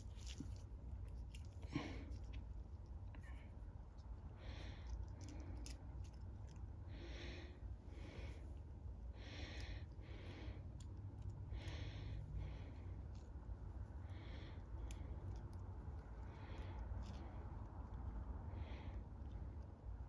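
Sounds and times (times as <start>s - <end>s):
person breathing: 1.6s - 2.3s, 4.3s - 5.9s, 6.8s - 20.0s
small clicks of parts handled: 4.8s - 6.7s.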